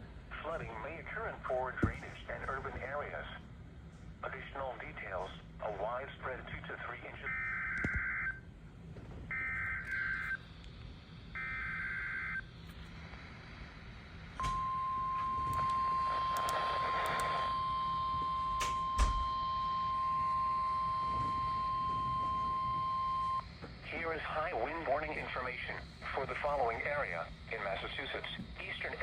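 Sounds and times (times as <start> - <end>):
steady warning alarm tone: 7.2 - 8.5, 9.3 - 29.0
clicks: 15.2 - 17.4.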